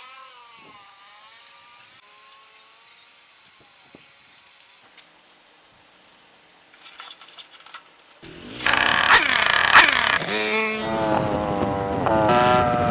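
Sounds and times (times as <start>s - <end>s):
dirt bike engine revving: 8.2s - 12.9s.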